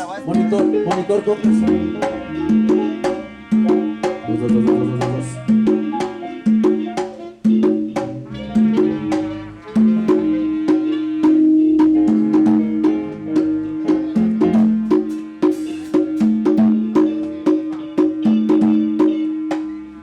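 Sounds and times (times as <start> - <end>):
live band playing instrumental: 0.0 - 20.0
sustained low bass notes: 0.3 - 6.0, 8.0 - 10.7.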